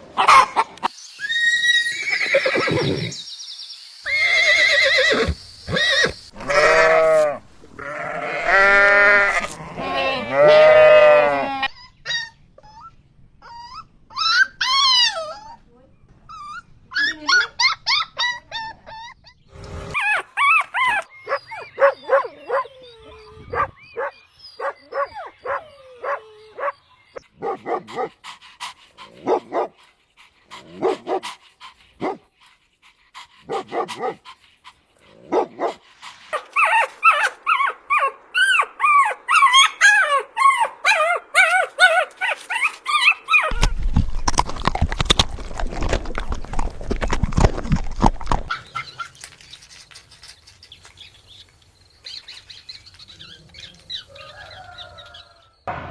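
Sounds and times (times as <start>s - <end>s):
puppies whimpering and yipping: 11.6s - 15.6s, 16.3s - 26.7s, 36.4s - 43.8s.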